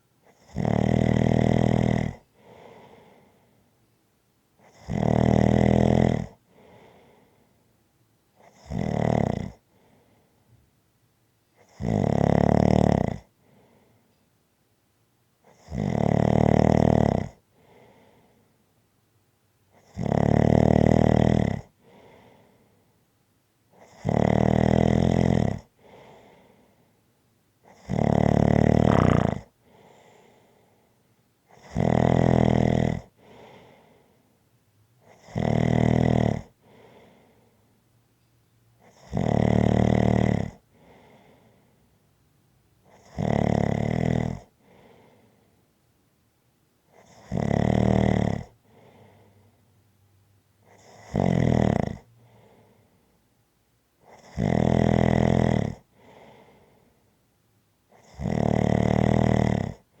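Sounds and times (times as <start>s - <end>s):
person snoring: 0.3s - 2.2s, 27.7s - 30.2s, 31.6s - 33.8s, 35.1s - 36.9s, 38.9s - 41.3s, 42.9s - 44.5s, 50.8s - 52.1s, 54.1s - 56.3s, 58.0s - 59.8s
faint breath out: 2.3s - 3.8s, 6.5s - 7.8s, 9.6s - 10.6s, 13.4s - 14.2s, 17.5s - 18.6s, 21.8s - 23.0s, 25.8s - 27.1s, 28.8s - 31.2s, 33.2s - 34.4s, 36.6s - 37.8s, 40.7s - 41.9s, 44.6s - 45.7s, 48.6s - 49.7s, 52.1s - 53.2s, 55.9s - 57.1s.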